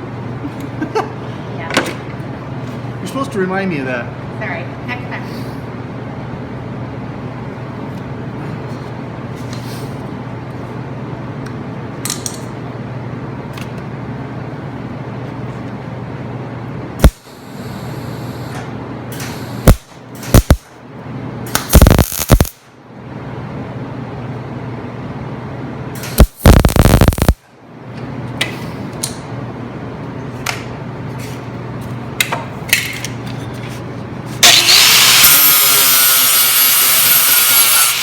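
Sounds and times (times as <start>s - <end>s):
steady electrical hum: 0.0s - 38.0s
welding arc crackling: 19.6s - 20.7s, 21.6s - 22.6s, 26.1s - 27.4s, 34.4s - 38.0s.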